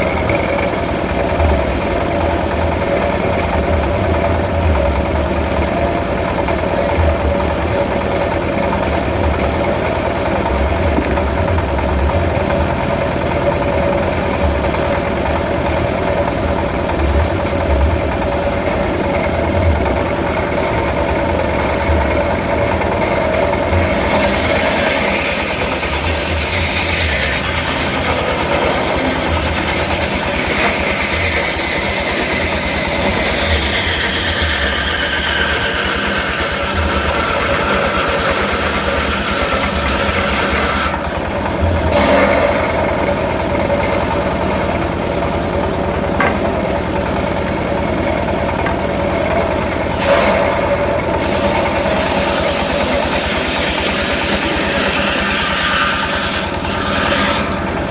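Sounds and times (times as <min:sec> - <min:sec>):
sawmill engine running: 0:00.0 - 0:57.9
high hissing saw whine: 0:23.7 - 0:41.1.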